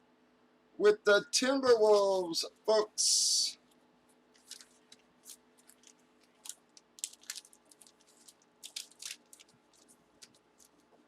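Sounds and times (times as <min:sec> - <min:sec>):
plastic packaging crinkling: 0:04.3 - 0:11.0.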